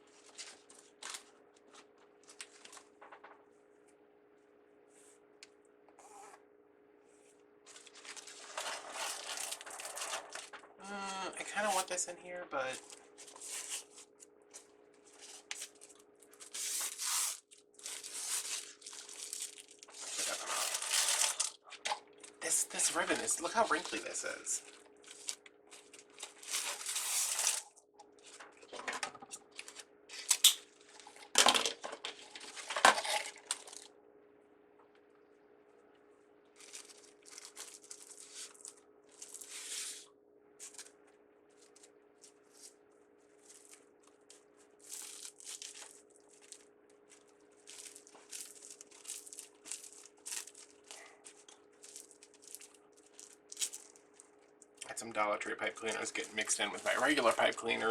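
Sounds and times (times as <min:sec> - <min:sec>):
faint steady hum: 0:00.0 - 0:57.9
ribbon crinkling: 0:12.7 - 0:21.6, 0:22.2 - 0:28.4, 0:36.6 - 0:40.0, 0:40.6 - 0:54.8, 0:55.7 - 0:57.9.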